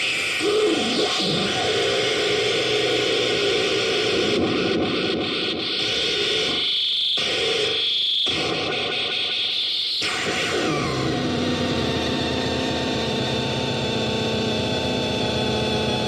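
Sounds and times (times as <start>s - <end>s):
harsh electronic noise: 0.0s - 16.0s
steady high whine: 0.0s - 16.0s.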